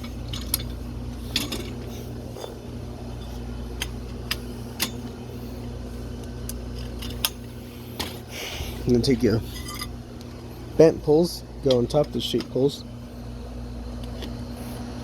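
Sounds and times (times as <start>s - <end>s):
metal poles clicking and knocking: 0.0s - 2.6s, 3.2s - 5.2s, 6.4s - 8.2s, 11.6s - 12.8s
steady low hum: 0.0s - 15.0s.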